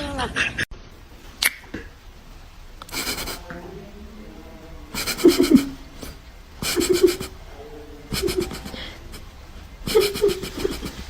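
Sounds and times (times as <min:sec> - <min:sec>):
animal calling: 0:02.8 - 0:11.0.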